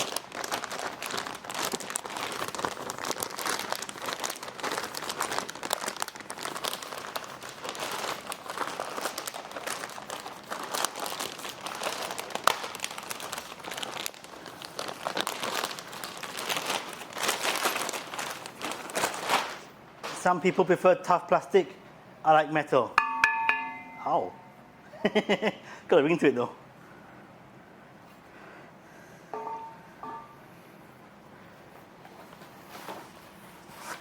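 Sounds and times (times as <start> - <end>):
plastic packaging crinkling: 0.0 - 19.8.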